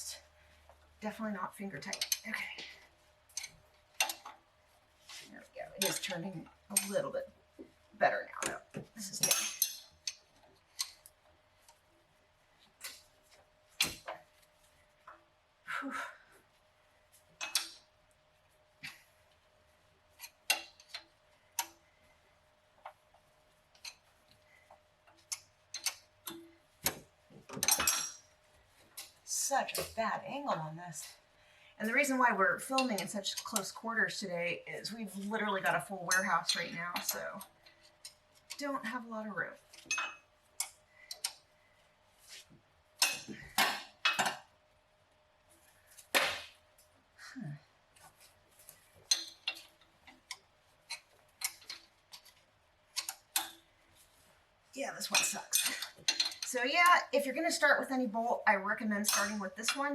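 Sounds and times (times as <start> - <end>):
socket wrench clanking on metal: 25.7 - 28.2, 49.1 - 49.7, 55.2 - 56.5.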